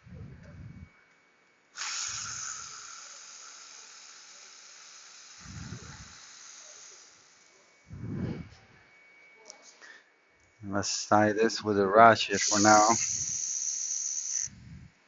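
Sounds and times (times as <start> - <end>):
gas hissing: 1.7 - 8.5, 12.2 - 14.9
muffled low bumps: 7.9 - 8.7.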